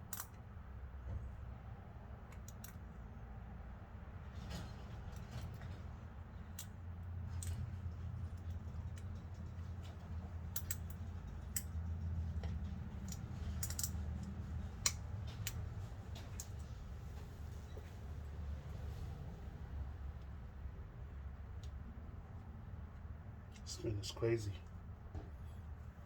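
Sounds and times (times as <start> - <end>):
hand tools clicking and tapping: 7.3 - 16.9.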